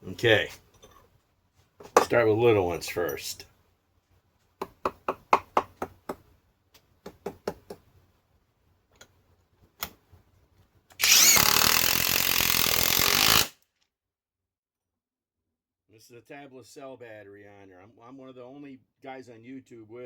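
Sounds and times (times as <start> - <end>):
impact wrench running: 11.0 - 13.6.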